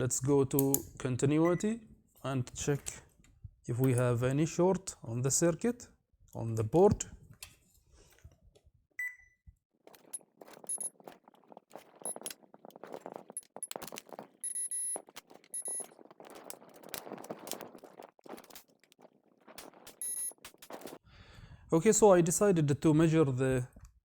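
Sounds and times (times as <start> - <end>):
multimeter short beeps: 10.7 - 10.9, 14.4 - 15.9, 20.0 - 20.4.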